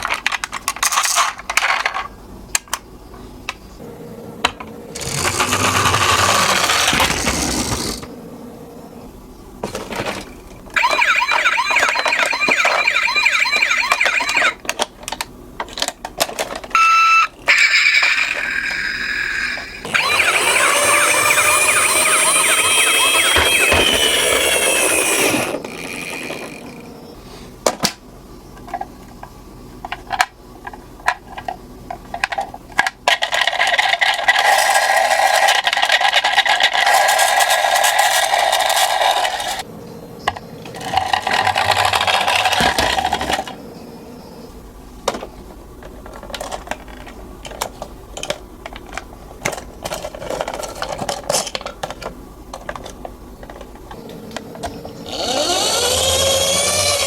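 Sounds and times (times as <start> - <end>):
toy cars clicking and rattling: 0.0 - 2.8, 5.0 - 8.1, 9.7 - 16.8, 17.4 - 26.8, 29.9 - 39.6, 40.6 - 43.6, 45.8 - 53.7
toy car whirring down slope: 4.9 - 8.1, 16.7 - 26.8, 33.3 - 39.6, 40.7 - 43.6, 55.0 - 57.0.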